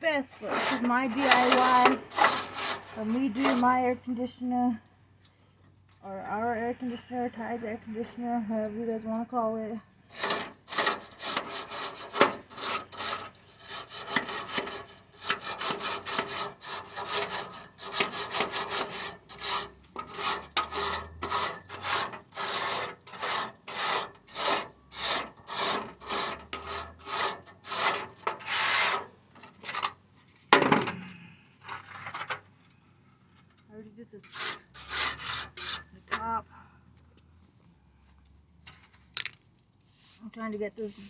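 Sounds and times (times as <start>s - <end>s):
rasping scraping strokes: 0.3s - 3.8s, 10.1s - 29.1s, 34.2s - 36.2s.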